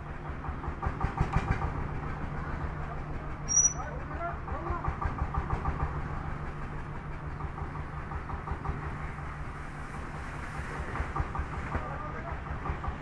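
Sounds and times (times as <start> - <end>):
bulldozer diesel engine rumbling: 0.0 - 4.9.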